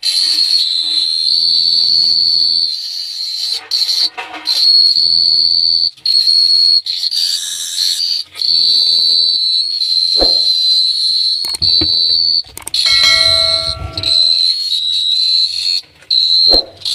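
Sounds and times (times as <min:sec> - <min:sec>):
cricket chirping trill: 0:09.2 - 0:14.5
short thump: 0:10.2 - 0:10.6
low held tone: 0:10.2 - 0:10.7, 0:11.5 - 0:14.6.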